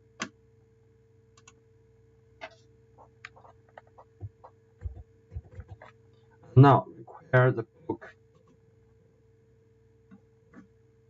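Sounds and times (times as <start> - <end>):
faint steady hum: 0.0 - 11.0
computer mouse and keyboard clicks: 2.4 - 6.0.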